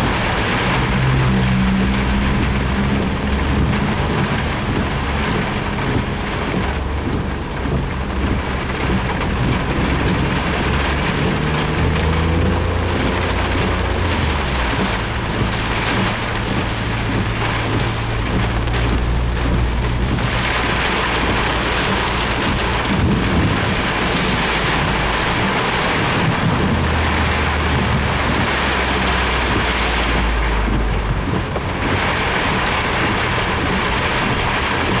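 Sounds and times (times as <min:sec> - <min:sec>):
heavy rain on car roof: 0:00.0 - 0:35.0
low rumble: 0:00.0 - 0:35.0.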